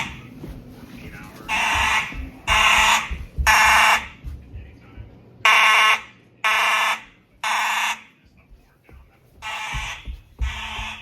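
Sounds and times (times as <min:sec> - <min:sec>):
fire alarm blasts: 0:01.6 - 0:04.1, 0:05.5 - 0:08.1, 0:09.4 - 0:11.0.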